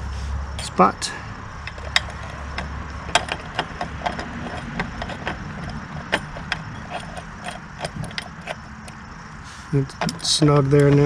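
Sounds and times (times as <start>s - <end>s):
allen wrench clicking: 1.6s - 9.1s, 9.9s - 11.0s.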